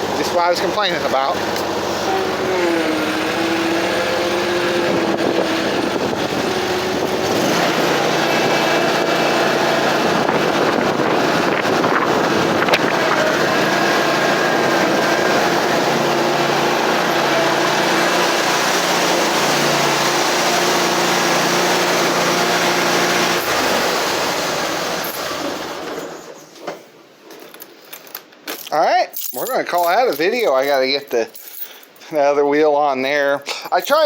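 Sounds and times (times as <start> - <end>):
mower engine running: 0.0 - 26.2.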